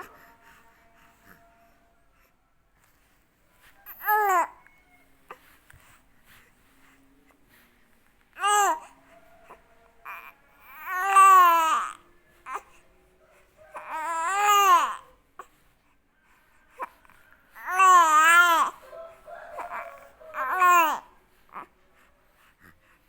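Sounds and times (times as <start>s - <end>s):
baby crying: 3.9s - 5.4s, 8.4s - 9.0s, 10.0s - 12.7s, 13.7s - 15.5s, 17.6s - 21.1s.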